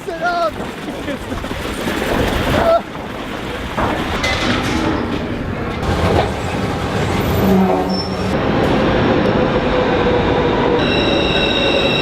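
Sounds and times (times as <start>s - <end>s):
subway train rumbling and rattling: 0.0s - 12.0s
train wheels squealing: 7.4s - 8.4s, 10.8s - 12.0s.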